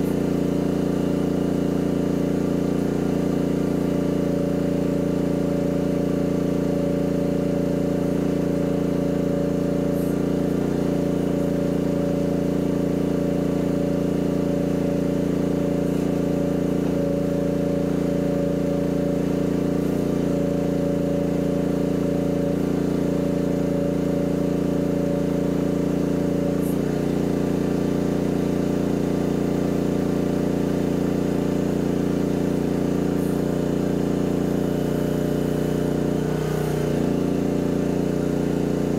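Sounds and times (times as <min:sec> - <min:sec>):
excavator engine running: 0:00.0 - 0:27.8.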